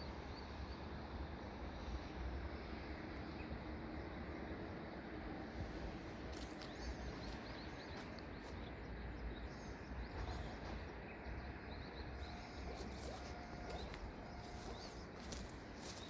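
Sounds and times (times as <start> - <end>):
small birds chirping: 5.6 - 16.0.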